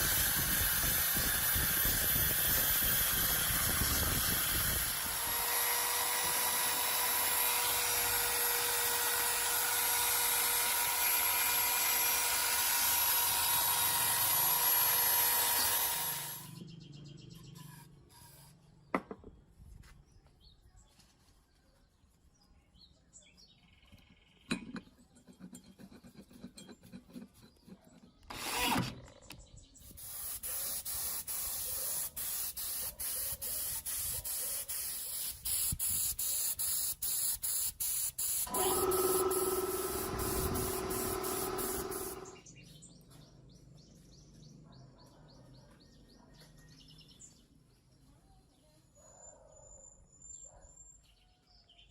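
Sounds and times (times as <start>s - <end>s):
paint spray hissing: 29.8s - 42.4s.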